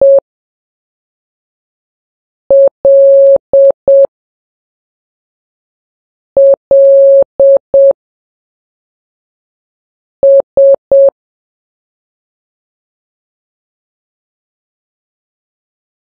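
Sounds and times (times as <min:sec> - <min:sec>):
morse code beeps: 0:02.5 - 0:04.1, 0:06.4 - 0:08.0, 0:10.2 - 0:11.1.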